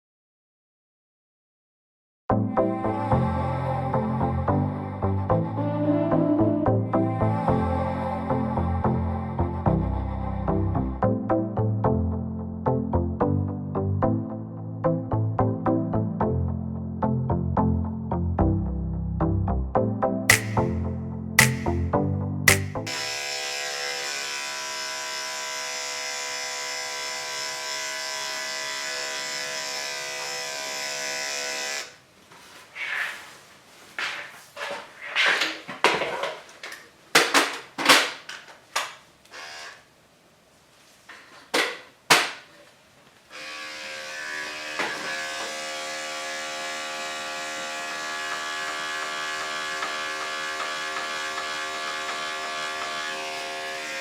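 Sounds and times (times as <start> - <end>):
electric clippers humming: 20.3 - 20.8, 21.4 - 21.8, 22.5 - 32.0, 43.3 - 54.0.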